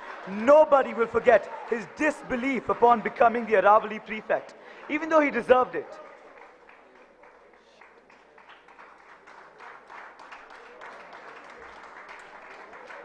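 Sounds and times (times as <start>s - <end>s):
distant audience clapping: 0.0s - 13.0s.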